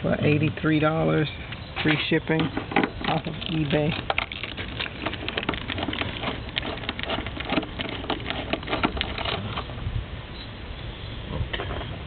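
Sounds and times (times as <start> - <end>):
parts and tools clicking: 1.8 - 9.7.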